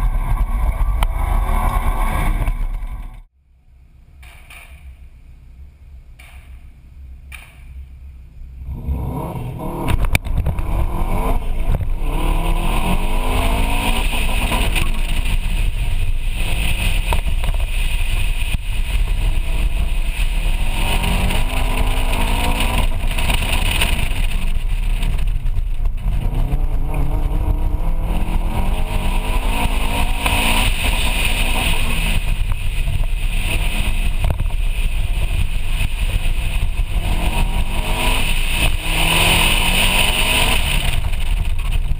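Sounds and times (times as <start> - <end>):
car engine revving: 0.0 - 3.3, 5.6 - 41.9
single click: 7.3 - 7.7.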